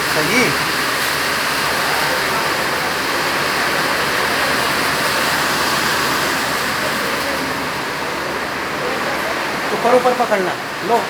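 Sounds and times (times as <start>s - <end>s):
torrential rain pouring: 0.0s - 11.0s
water rushing off rocks: 0.0s - 11.0s.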